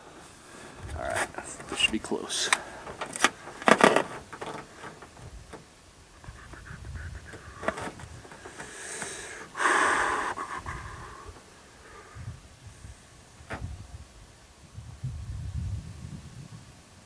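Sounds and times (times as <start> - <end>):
person breathing: 2.4 - 3.0, 7.4 - 12.4.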